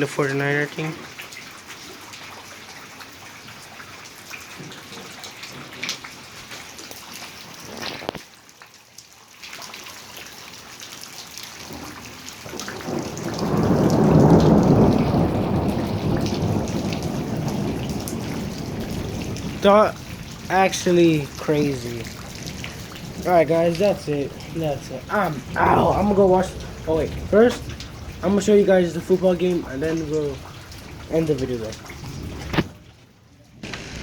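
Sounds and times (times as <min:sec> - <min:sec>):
steady rain: 0:00.0 - 0:34.0
rolling thunderclap: 0:11.7 - 0:32.8, 0:33.6 - 0:34.0.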